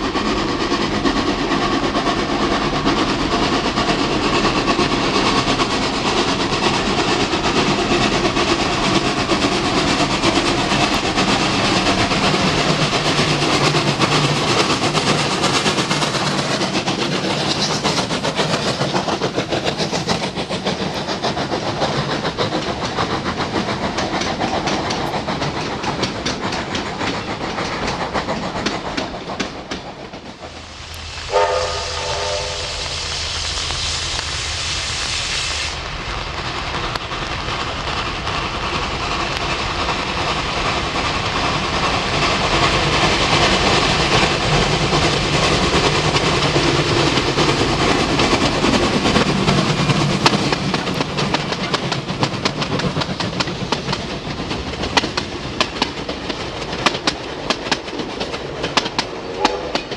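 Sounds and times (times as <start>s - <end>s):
steam train passing: 0.0s - 59.9s
steam whistle blast: 31.2s - 33.2s.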